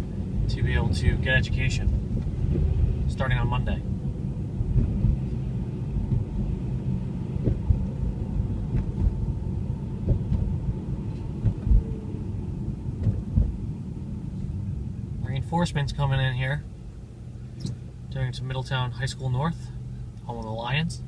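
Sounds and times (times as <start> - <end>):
low thumps: 0.0 - 15.2
engine and road rumble: 0.0 - 21.0.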